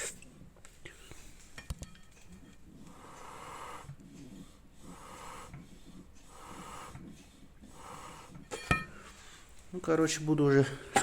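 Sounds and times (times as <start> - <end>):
faint puffs of hissing air: 2.8 - 9.7.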